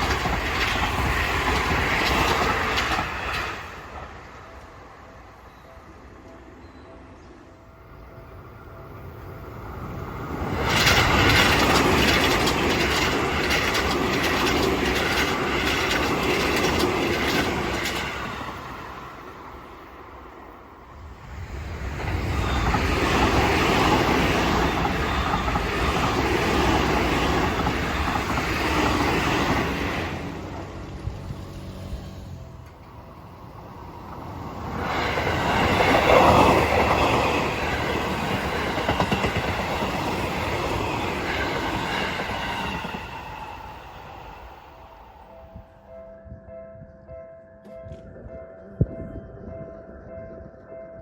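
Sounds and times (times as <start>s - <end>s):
wheels clacking over rail joints: 0.0s - 4.2s, 10.2s - 19.6s, 21.8s - 44.7s
electric trains passing: 0.0s - 51.0s.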